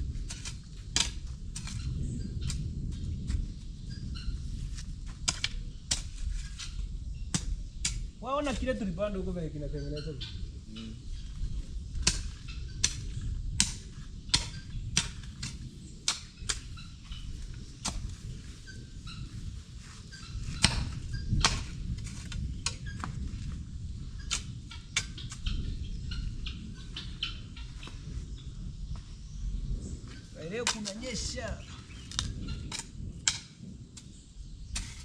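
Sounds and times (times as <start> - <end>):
steady low rumble: 0.0 - 35.0.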